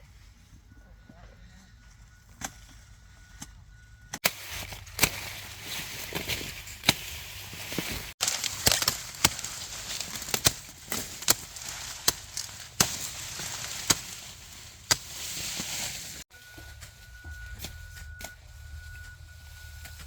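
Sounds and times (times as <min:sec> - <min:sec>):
corn stalks snapping: 0:04.2 - 0:16.2
dry corn plants rustling: 0:04.2 - 0:20.0.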